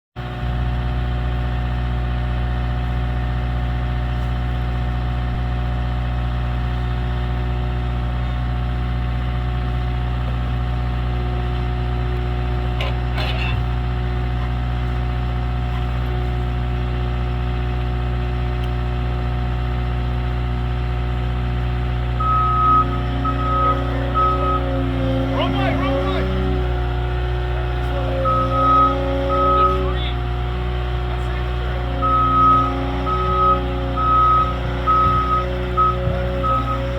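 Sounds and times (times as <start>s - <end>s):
skid steer engine running: 0.2s - 36.9s
backup alarm beeps: 22.2s - 26.4s, 28.2s - 30.1s, 31.9s - 36.9s.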